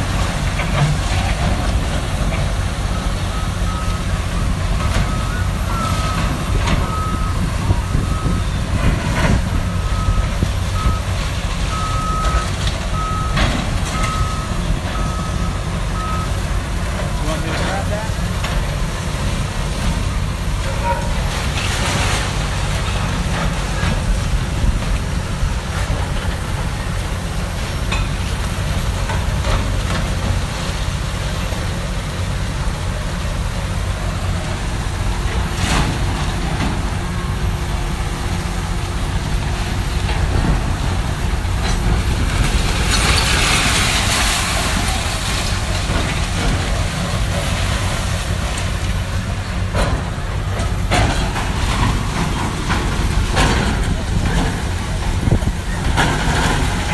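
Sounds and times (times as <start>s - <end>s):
demolition machinery rumbling: 0.0s - 56.9s.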